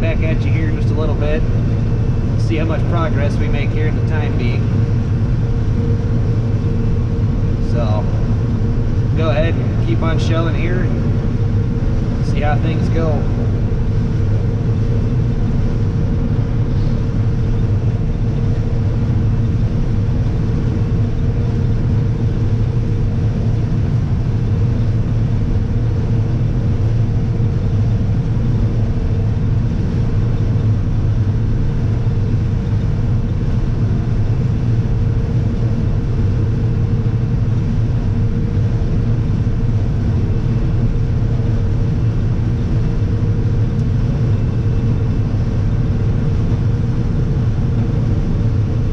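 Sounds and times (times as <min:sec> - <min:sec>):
combine harvester engine hum: 0:00.0 - 0:48.9
high machinery whine: 0:00.0 - 0:48.9.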